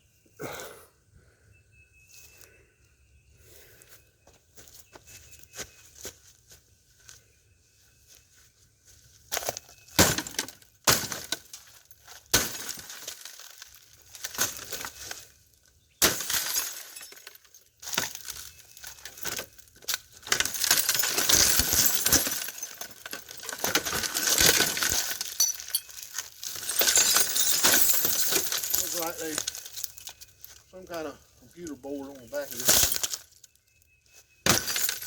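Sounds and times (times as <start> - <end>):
glass breaking and tinkling: 9.5 - 15.3, 16.0 - 30.7, 32.0 - 33.7, 34.4 - 35.0
sledgehammer hitting glass: 10.0 - 11.5, 12.3 - 13.3, 16.0 - 17.4, 20.3 - 29.9, 32.5 - 33.2, 34.4 - 35.0.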